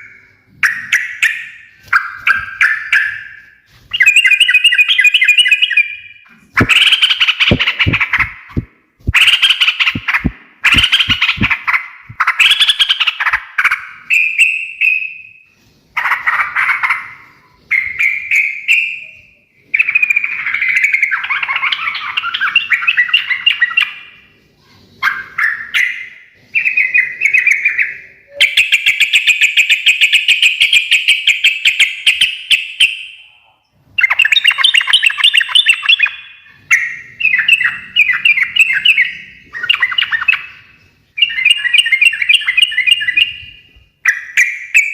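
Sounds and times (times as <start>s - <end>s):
bulbul chattering song: 0.6s - 15.0s.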